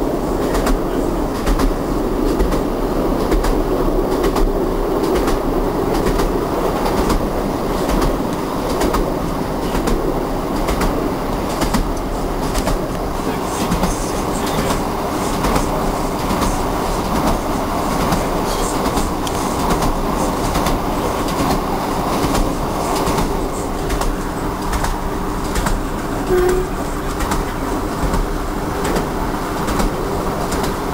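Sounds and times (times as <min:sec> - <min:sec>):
train wheels rolling rumble: 0:00.0 - 0:30.9
wheels clicking over rail joints: 0:00.0 - 0:30.9.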